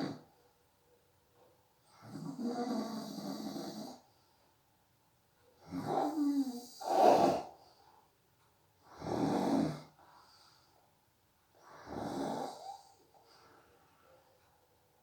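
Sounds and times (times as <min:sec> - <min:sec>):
person snoring: 0:02.0 - 0:04.0, 0:05.7 - 0:07.5, 0:08.9 - 0:10.0, 0:11.6 - 0:13.0.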